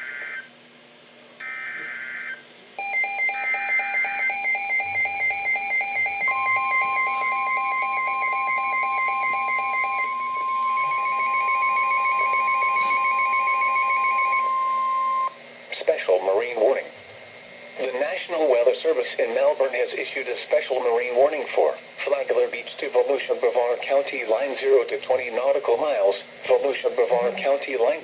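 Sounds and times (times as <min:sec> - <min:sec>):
pulsing alarm beep: 0:01.4 - 0:15.4
steady warning tone: 0:01.4 - 0:15.7.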